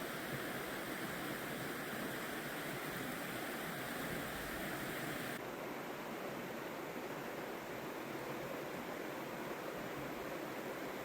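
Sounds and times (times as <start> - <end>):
river rushing: 0.0 - 5.4.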